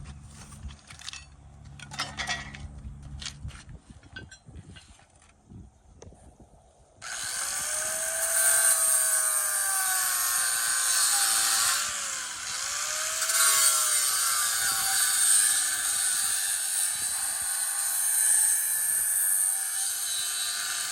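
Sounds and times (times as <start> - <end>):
angle grinder grinding steel: 7.0 - 20.9.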